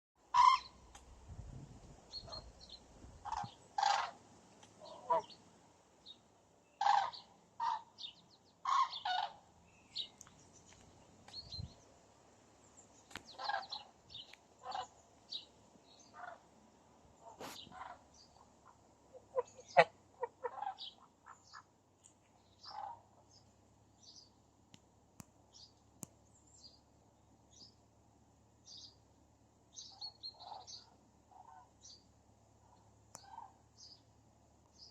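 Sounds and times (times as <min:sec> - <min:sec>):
herons calling: 0:00.2 - 0:00.9, 0:02.1 - 0:11.8, 0:13.0 - 0:16.5, 0:17.2 - 0:21.8, 0:22.4 - 0:23.4, 0:29.8 - 0:32.0.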